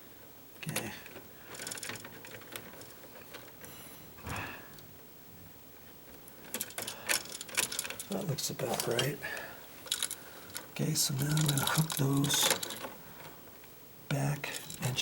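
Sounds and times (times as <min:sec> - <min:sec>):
wire strippers clicking and rasping: 0:09.8 - 0:13.4, 0:14.1 - 0:15.0.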